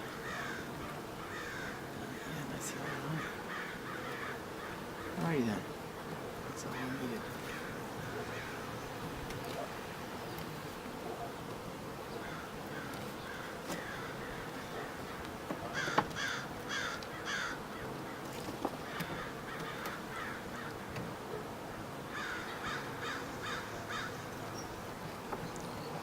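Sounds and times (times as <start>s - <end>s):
crow cawing: 0.0s - 5.2s, 6.7s - 8.6s, 12.2s - 18.2s, 18.9s - 21.0s, 22.1s - 24.2s
honeybees humming: 0.0s - 26.0s.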